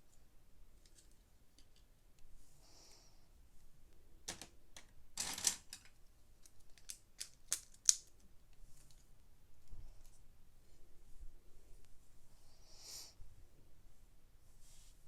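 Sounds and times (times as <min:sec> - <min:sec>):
plastic pieces rattling: 0:04.3 - 0:06.0
plastic bricks clicking together: 0:04.3 - 0:08.2.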